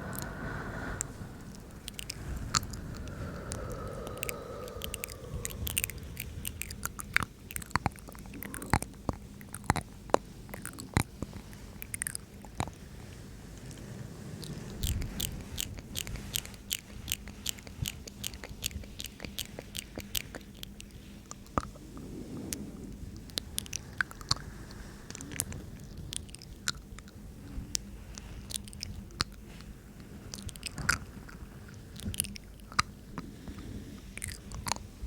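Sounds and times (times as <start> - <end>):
wet mouth and tongue clicks: 0.1 - 12.8, 14.4 - 21.6, 25.1 - 27.1, 27.7 - 29.4, 30.3 - 31.0, 32.0 - 32.9.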